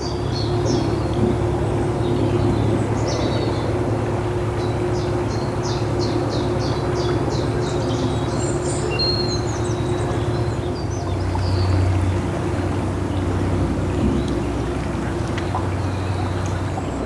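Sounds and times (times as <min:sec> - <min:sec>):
boat diesel engine humming: 0:00.0 - 0:17.0
songbird singing: 0:04.6 - 0:17.0.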